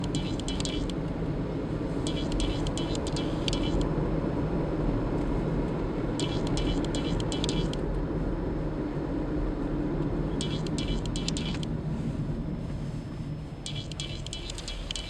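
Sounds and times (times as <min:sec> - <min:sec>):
road and engine noise: 0:00.0 - 0:15.0
dashboard trim squeaking: 0:13.7 - 0:15.0.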